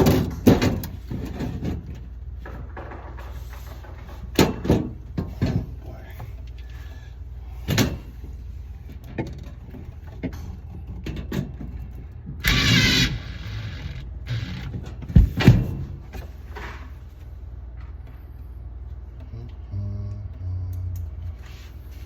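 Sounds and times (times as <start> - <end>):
steady low hum: 11.6 - 22.0
loud thumps: 12.4 - 16.1.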